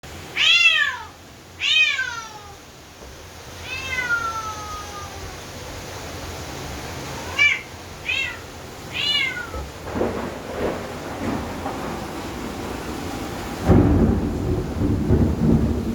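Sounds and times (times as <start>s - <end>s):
cat meowing: 0.3s - 2.7s, 3.6s - 5.6s, 7.2s - 9.8s
thunder rumbling: 7.1s - 15.9s.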